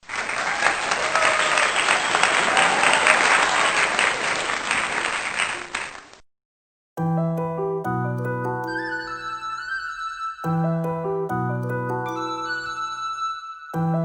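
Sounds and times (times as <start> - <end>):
audience applauding: 0.0 - 6.2.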